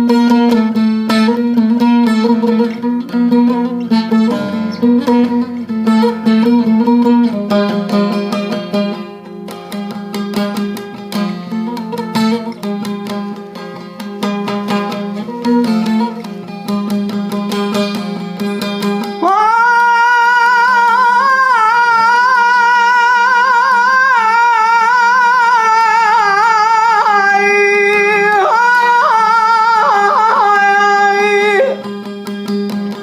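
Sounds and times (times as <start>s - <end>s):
plucked string instrument: 0.0s - 33.0s
solo voice singing melismatic notes: 19.2s - 31.8s.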